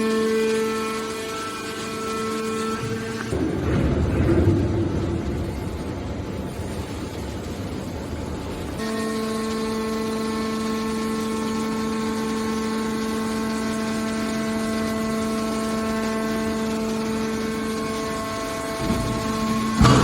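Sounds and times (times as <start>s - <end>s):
hydraulic baler running: 0.0s - 20.0s
steady machine whine: 0.0s - 20.0s.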